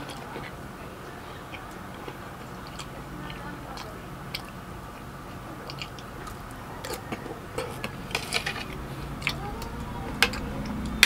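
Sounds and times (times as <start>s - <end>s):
chewing clicks: 1.4s - 11.0s
utensils tapping: 5.6s - 11.0s.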